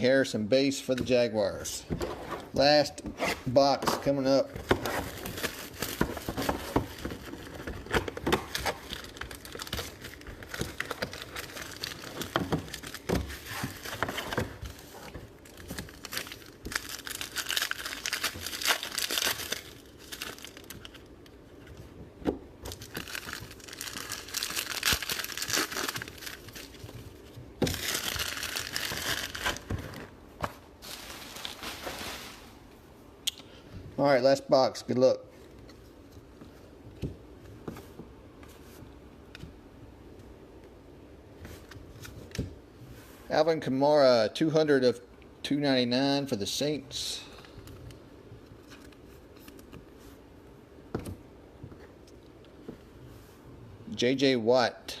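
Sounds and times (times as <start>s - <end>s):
plastic wrapping crinkling and tearing: 4.6s - 21.4s, 22.6s - 32.7s.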